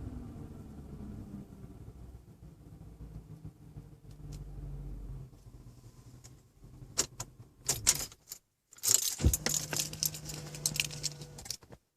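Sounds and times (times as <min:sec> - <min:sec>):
keys jangling: 0:07.7 - 0:11.6.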